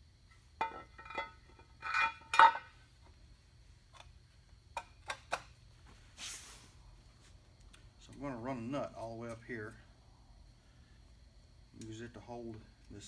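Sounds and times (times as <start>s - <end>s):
short scraping hiss: 6.1s - 6.8s.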